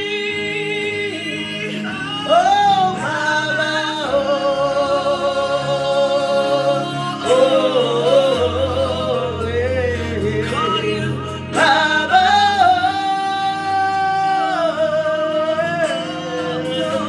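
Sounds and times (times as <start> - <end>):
solo voice singing gospel: 0.0 - 17.0.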